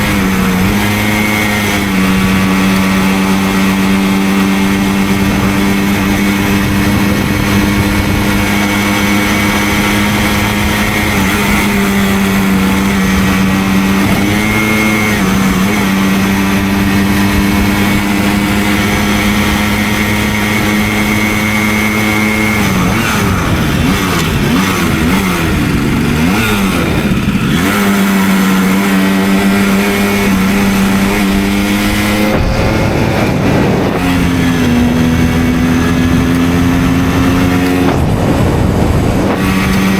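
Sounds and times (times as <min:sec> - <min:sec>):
moped engine: 0:00.0 - 0:39.9.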